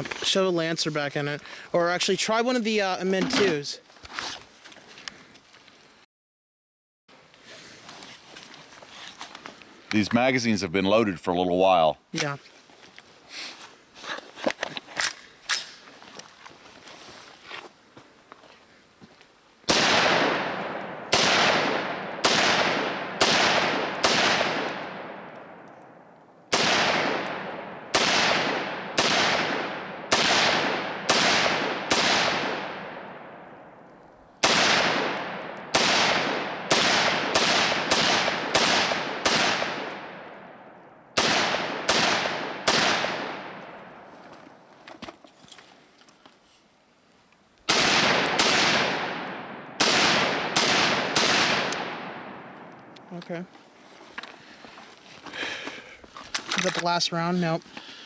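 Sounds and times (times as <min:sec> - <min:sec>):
gunshots: 0:19.7 - 0:25.4, 0:26.5 - 0:33.4, 0:34.4 - 0:40.6, 0:41.2 - 0:43.7, 0:47.7 - 0:52.6.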